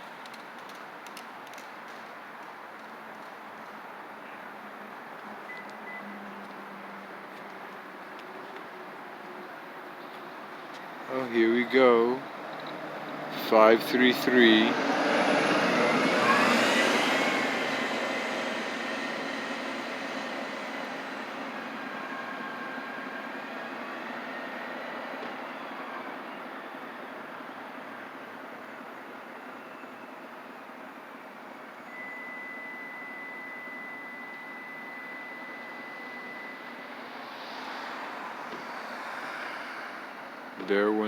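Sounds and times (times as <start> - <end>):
train rumbling past: 6.2 - 41.0
passing vehicle rushing: 11.1 - 26.9, 35.7 - 41.0
thin high whine: 31.6 - 38.6.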